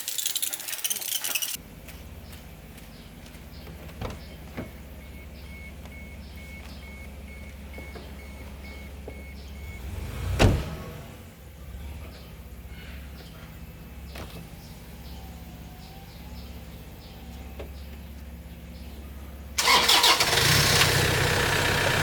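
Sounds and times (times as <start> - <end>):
car engine idling: 1.6 - 22.0
dashboard warning chime beeping: 4.5 - 10.2
loud thump: 10.4 - 10.9.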